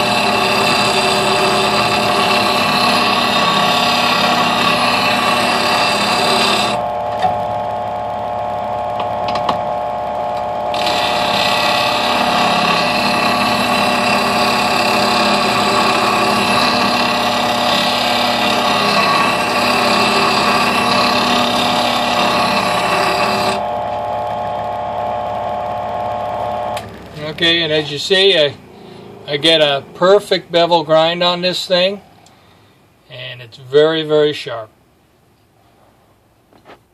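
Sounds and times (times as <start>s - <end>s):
metal grinding on wheel: 0.0s - 7.4s, 10.6s - 28.5s
bench grinder motor hum: 0.0s - 30.2s.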